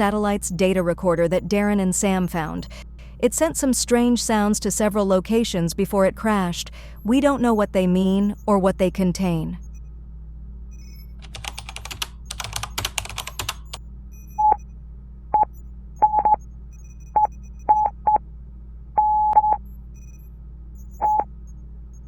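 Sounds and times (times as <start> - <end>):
morse-like electronic beeps: 0.0 - 3.0, 6.8 - 9.9, 10.7 - 18.2, 19.0 - 22.0
computer keyboard typing: 10.8 - 13.8.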